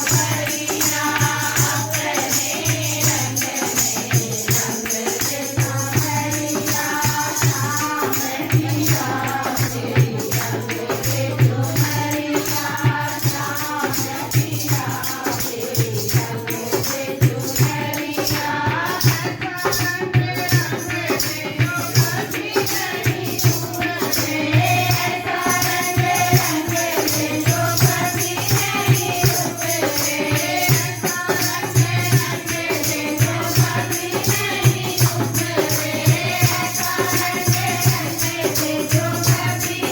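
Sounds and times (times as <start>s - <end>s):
devotional singing: 0.0s - 39.9s
jingling hand percussion: 0.0s - 39.9s.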